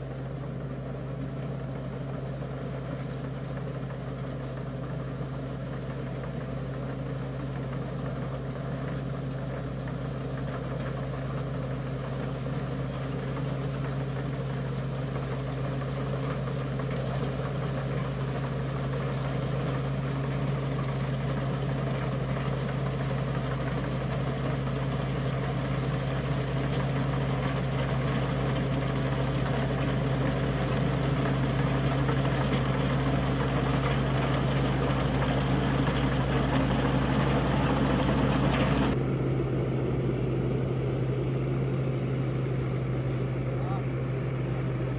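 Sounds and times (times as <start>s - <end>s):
tractor engine humming: 9.9s - 44.9s.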